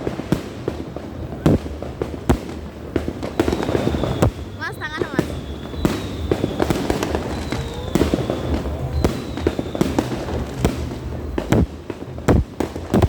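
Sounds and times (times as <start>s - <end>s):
fireworks bangs and crackle: 0.0s - 13.0s
thin falling whistles: 3.4s - 10.6s.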